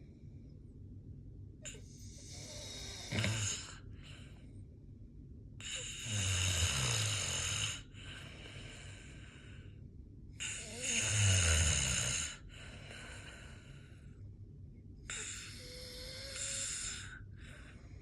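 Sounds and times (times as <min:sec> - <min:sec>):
low snoring: 0:01.7 - 0:04.3, 0:05.6 - 0:09.5, 0:10.4 - 0:14.0, 0:15.1 - 0:18.0.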